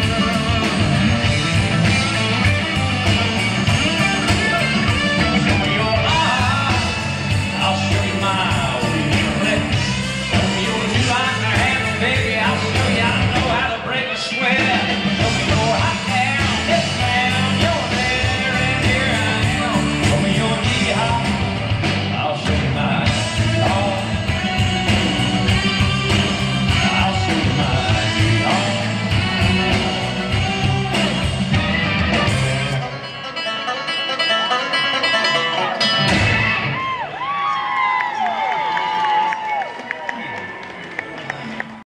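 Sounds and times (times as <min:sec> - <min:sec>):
bass guitar: 0:00.0 - 0:37.5
drums: 0:00.0 - 0:41.8
electric guitar: 0:00.0 - 0:41.8
person singing: 0:03.3 - 0:31.6.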